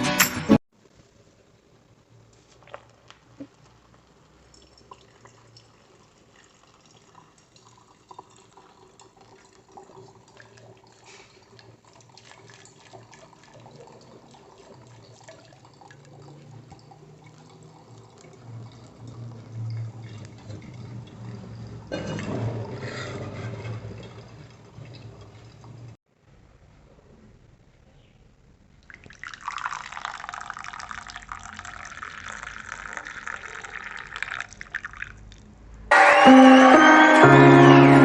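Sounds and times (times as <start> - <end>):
running and dripping water: 2.3 - 22.7, 23.9 - 26.0, 28.8 - 35.4.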